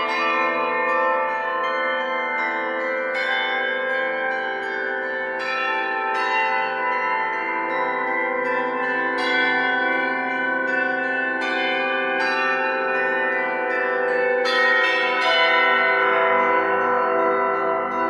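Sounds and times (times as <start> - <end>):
church bells ringing: 0.0 - 18.0.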